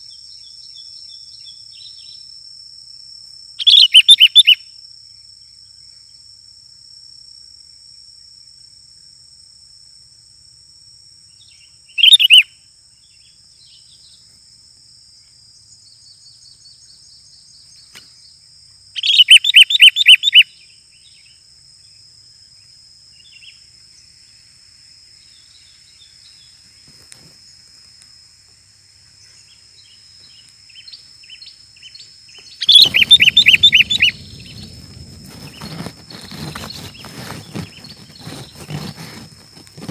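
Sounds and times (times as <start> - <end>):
soft bird chirps: 11.4 - 12.4, 19.0 - 21.3, 29.2 - 39.9
steady high whine: 32.4 - 38.2
rustling noise: 32.4 - 39.9
bird chattering calls: 32.6 - 38.8.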